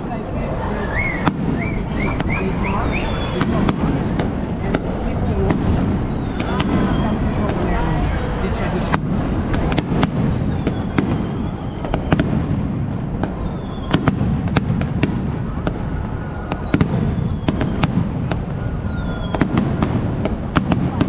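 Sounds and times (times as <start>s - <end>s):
faint whistling fireworks: 0.0s - 21.0s
rumble of firework bursts: 0.0s - 21.0s
sharp firework cracks: 8.8s - 21.0s.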